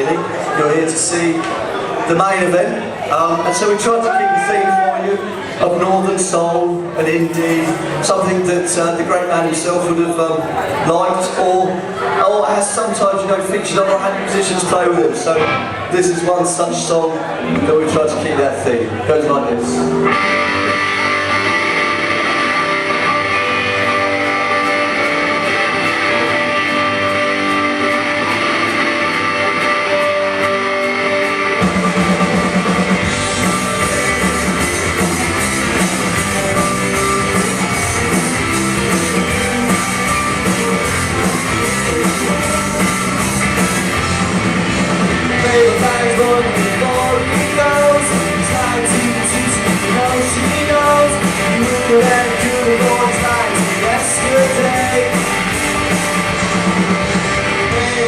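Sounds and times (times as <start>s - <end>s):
bass: 0.0s - 58.0s
drums: 0.0s - 58.0s
electric guitar: 15.2s - 15.9s, 18.9s - 58.0s.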